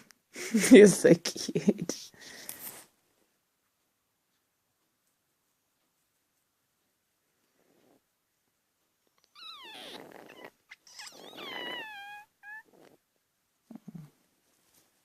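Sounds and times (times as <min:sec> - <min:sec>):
parrot yawning squeakily: 0:09.4 - 0:12.8.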